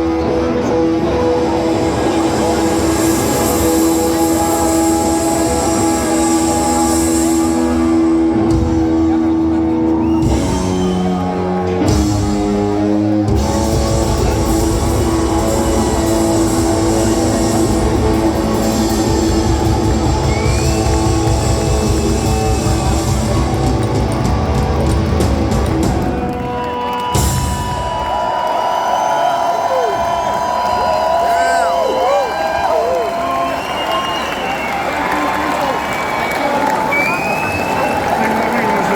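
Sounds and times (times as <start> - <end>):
rockabilly band playing: 0.0 - 28.2.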